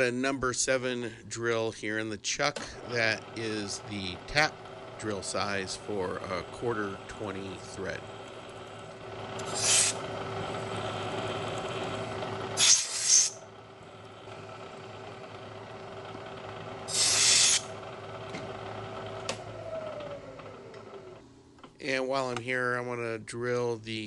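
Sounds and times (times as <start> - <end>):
milling machine motor hum: 2.6 - 21.8
drill cutting metal: 9.3 - 13.4, 16.9 - 17.8
short hissing bursts: 9.4 - 10.0, 12.6 - 13.4, 16.9 - 17.7.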